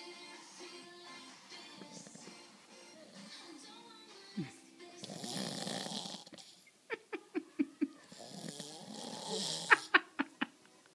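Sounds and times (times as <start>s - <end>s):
rattling snore: 5.0s - 6.4s, 8.1s - 9.7s.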